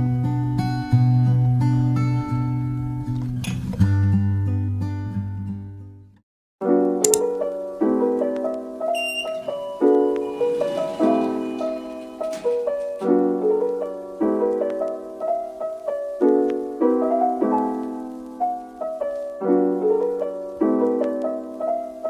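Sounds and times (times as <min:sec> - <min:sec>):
soft piano music: 0:06.6 - 0:22.0.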